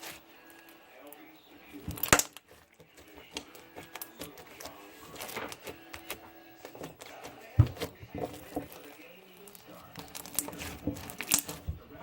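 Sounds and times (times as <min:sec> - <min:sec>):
dull thump: 0:07.5 - 0:08.7
beaded slime clicking and crackling: 0:09.4 - 0:11.6.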